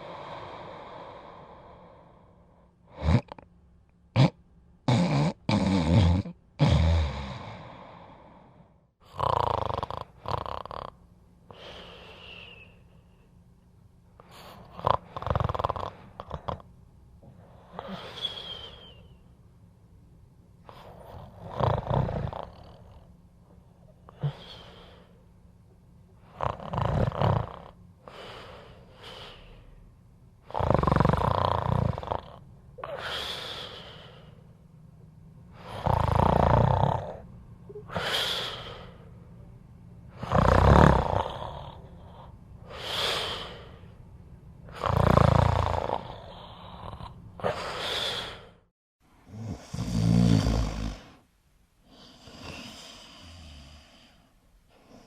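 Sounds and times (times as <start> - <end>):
breathy hissing out-breath: 0.0 - 2.6, 32.8 - 34.5, 37.9 - 39.1, 42.6 - 44.0, 47.4 - 48.6
person snoring: 0.0 - 3.5, 4.2 - 12.8, 14.2 - 16.6, 20.7 - 23.1, 26.3 - 29.6, 30.5 - 34.4, 35.5 - 39.1, 40.1 - 43.9, 44.7 - 48.6, 49.3 - 51.2, 51.9 - 55.0.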